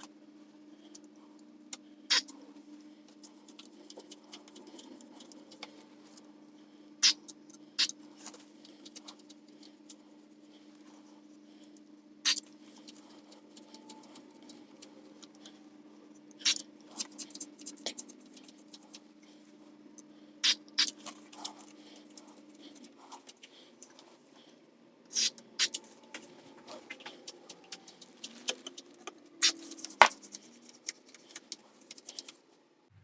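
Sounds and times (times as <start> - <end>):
faint steady hum: 0.0 - 33.0
aerosol spray squirts: 20.4 - 21.0, 25.1 - 25.8.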